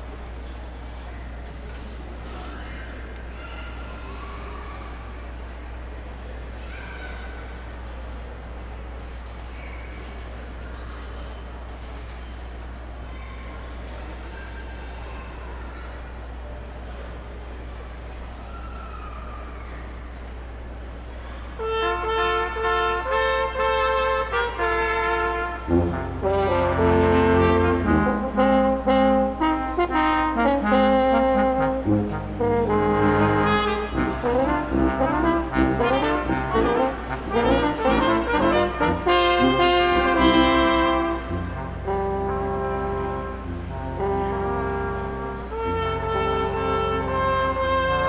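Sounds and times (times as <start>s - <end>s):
brass ensemble playing: 21.6s - 48.0s.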